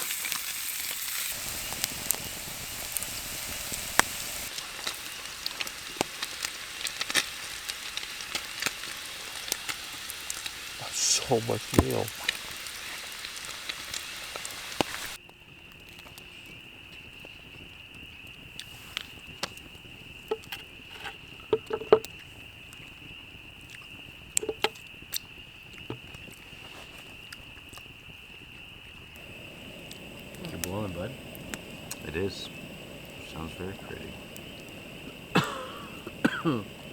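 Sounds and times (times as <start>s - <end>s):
food sizzling in a pan: 0.0s - 15.2s, 29.2s - 36.9s
frog chorus: 1.3s - 15.2s, 27.2s - 36.9s.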